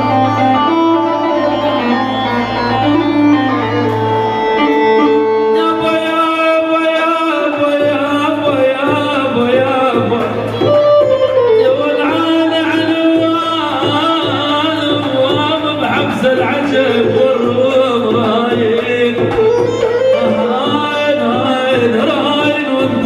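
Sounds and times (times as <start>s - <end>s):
person singing: 0.0s - 23.0s.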